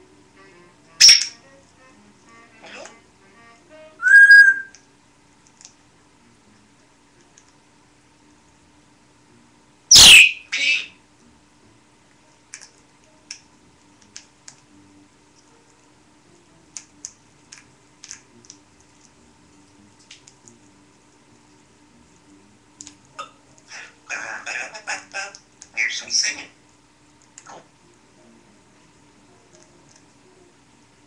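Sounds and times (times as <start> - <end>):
parrot clicks and chirps: 1.0 - 1.4
parrot whistling: 1.0 - 1.4, 4.0 - 4.8, 9.9 - 11.0.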